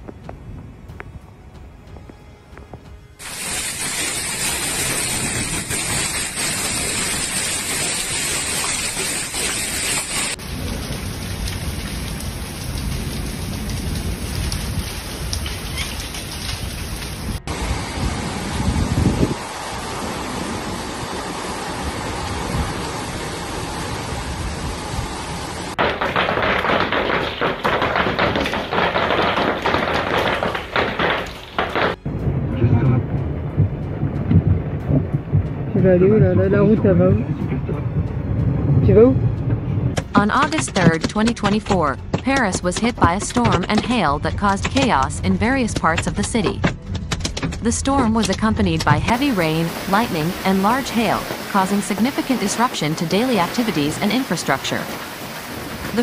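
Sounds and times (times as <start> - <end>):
hailstones pelting hard surface: 3.2 - 17.3, 25.8 - 32.0
heavy rain pouring: 3.2 - 56.0
low rumble: 32.0 - 40.4, 43.2 - 51.5.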